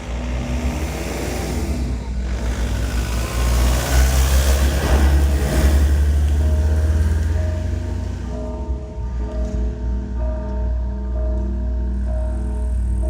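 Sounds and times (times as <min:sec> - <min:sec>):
bells ringing: 0:04.1 - 0:13.0.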